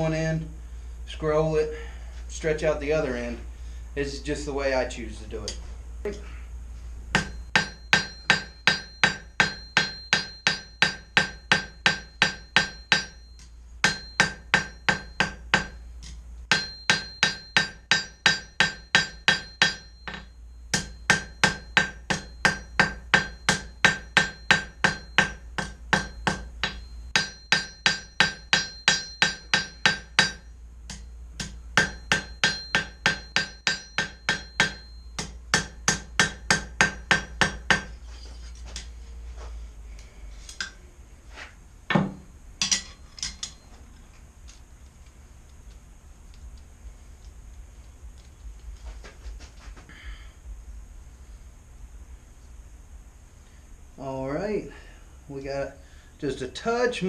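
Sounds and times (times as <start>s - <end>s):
hammer striking steel on anvil: 7.1s - 38.0s, 40.5s - 40.8s, 41.9s - 43.7s.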